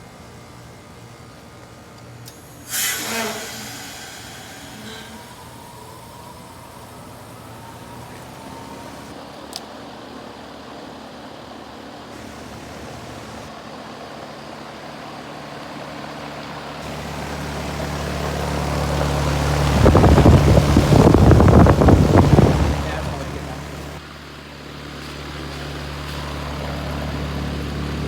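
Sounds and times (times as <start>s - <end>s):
heat pump humming: 0.0s - 9.2s, 12.1s - 13.5s, 16.8s - 24.0s
gusty air rushing: 16.8s - 24.0s.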